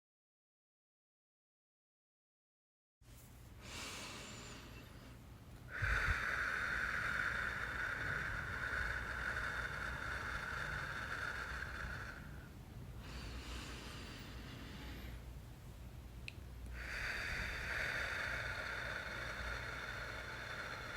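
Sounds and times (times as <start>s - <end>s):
person breathing through the mouth: 3.6s - 15.4s, 16.7s - 20.9s.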